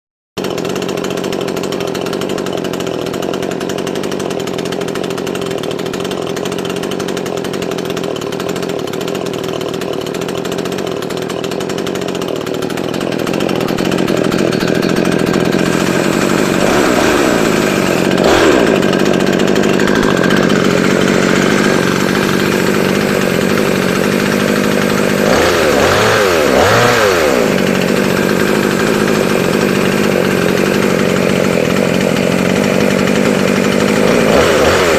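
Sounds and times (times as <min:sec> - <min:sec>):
chainsaw running: 0:00.4 - 0:34.9.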